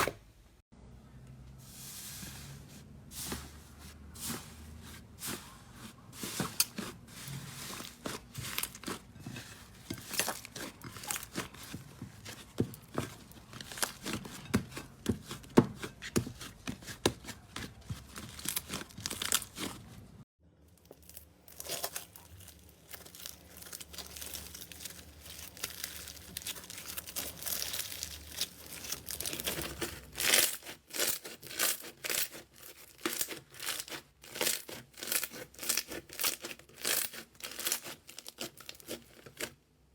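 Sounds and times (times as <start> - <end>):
slime squeezed crackling and popping: 20.9 - 29.5.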